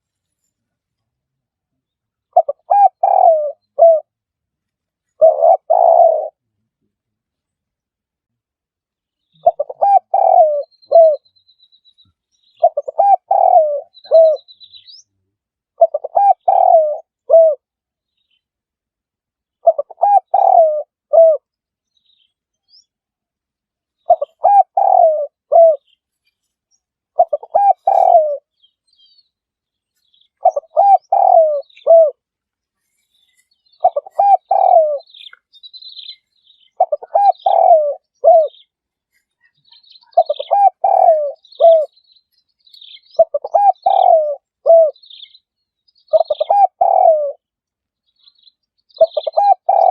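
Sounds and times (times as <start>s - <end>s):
dove cooing: 2.3s - 4.1s, 5.2s - 6.4s, 9.4s - 11.2s, 12.6s - 14.5s, 15.8s - 17.7s, 19.6s - 21.5s, 24.0s - 25.9s, 27.1s - 28.5s, 30.4s - 32.2s, 33.7s - 38.7s, 39.4s - 42.0s, 42.8s - 45.3s, 46.0s - 47.4s, 49.0s - 49.9s
small bird chirping: 9.0s - 18.5s, 19.5s - 23.0s, 23.9s - 49.9s.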